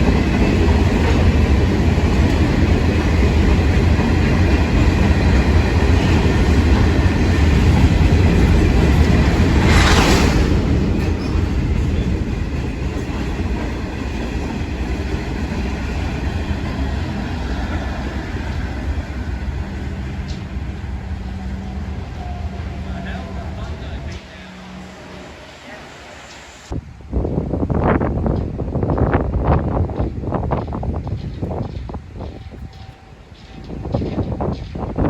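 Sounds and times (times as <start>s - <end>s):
train wheels rumbling on track: 0.0s - 35.0s
short loud hiss: 9.6s - 11.2s.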